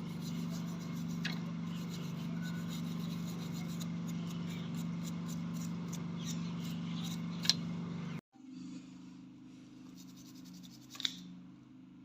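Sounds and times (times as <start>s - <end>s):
hand tools scraping metal: 0.0s - 7.6s
steady low hum: 0.0s - 12.0s
sharp click: 10.9s - 11.2s.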